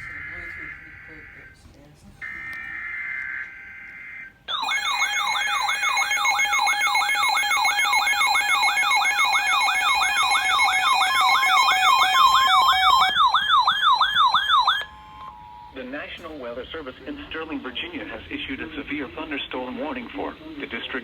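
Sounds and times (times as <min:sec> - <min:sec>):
shrill warbling alert tone: 0:00.0 - 0:01.6, 0:02.2 - 0:15.8
steady underlying tones: 0:00.0 - 0:13.2.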